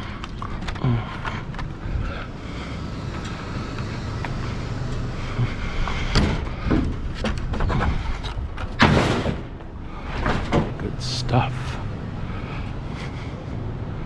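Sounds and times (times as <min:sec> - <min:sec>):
low rumble: 0:00.0 - 0:14.0
wooden pallets knocking and clattering: 0:06.1 - 0:10.9
loud bang: 0:08.8 - 0:09.6.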